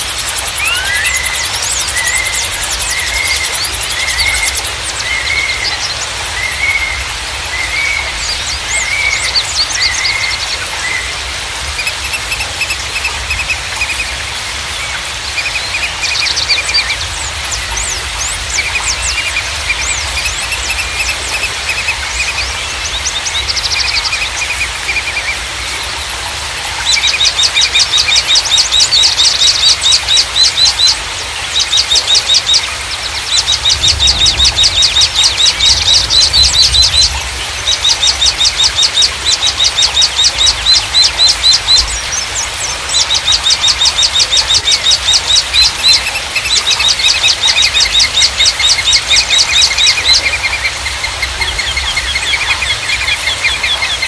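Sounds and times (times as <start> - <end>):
songbird trilling: 0.0 - 7.0, 26.8 - 54.0
soft lower bird chirping: 0.0 - 14.2.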